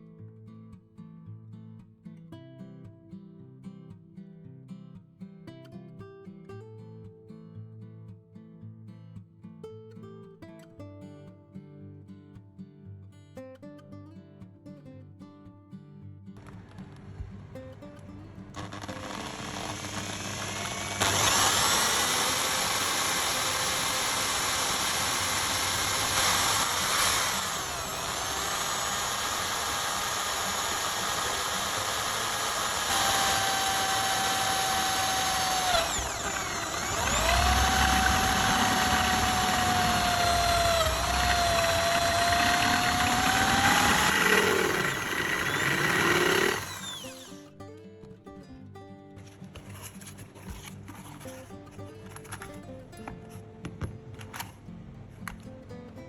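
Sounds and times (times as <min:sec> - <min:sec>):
power tool motor whining: 0:18.5 - 0:47.5.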